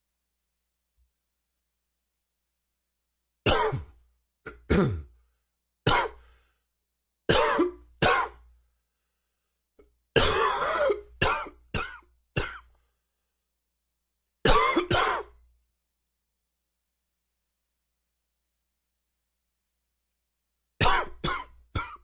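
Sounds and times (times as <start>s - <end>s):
man coughing: 3.5s - 5.2s, 5.9s - 6.2s, 7.3s - 8.4s, 10.2s - 12.7s, 14.5s - 15.4s, 20.8s - 22.0s.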